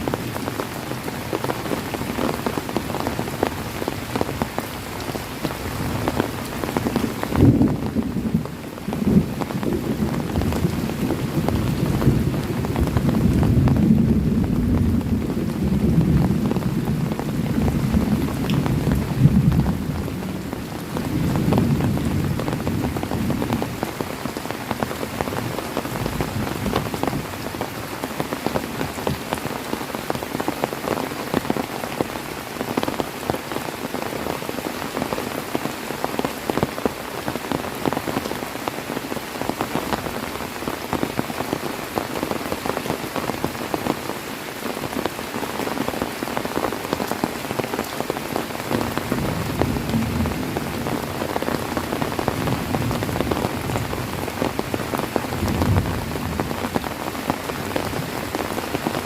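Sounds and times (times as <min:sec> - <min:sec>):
heavy rain falling: 0:00.0 - 0:59.0
thunder rumble: 0:07.0 - 0:23.8, 0:48.8 - 0:54.6, 0:55.2 - 0:56.8.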